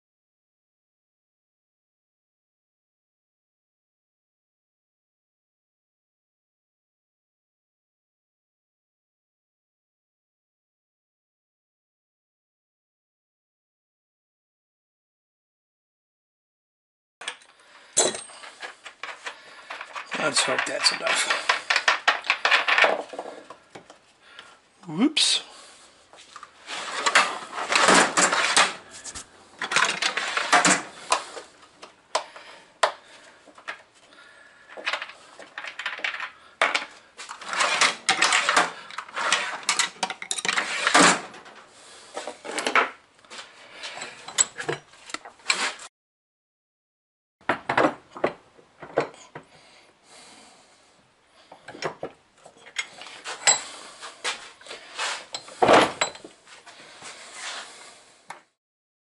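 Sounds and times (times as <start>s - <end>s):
metal hardware clinking and rattling: 17.2s - 23.4s, 29.6s - 30.9s, 34.8s - 41.0s, 43.9s - 45.6s, 52.6s - 53.8s, 55.4s - 56.3s.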